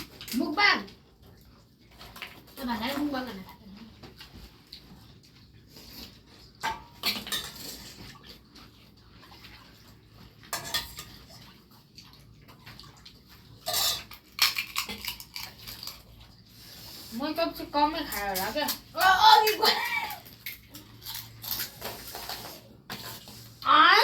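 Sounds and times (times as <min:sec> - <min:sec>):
spoons and dishes clinking: 0:06.6 - 0:08.0, 0:10.5 - 0:11.3, 0:13.6 - 0:16.1.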